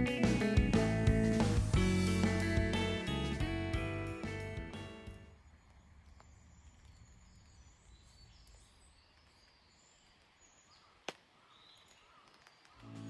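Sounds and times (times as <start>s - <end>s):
distant bird calls: 5.3s - 13.0s.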